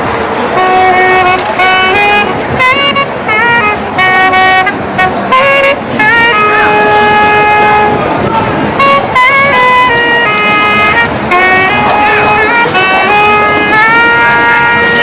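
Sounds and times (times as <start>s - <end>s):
city street noise: 0.0s - 15.0s
horn-like wind instrument melody: 0.0s - 15.0s.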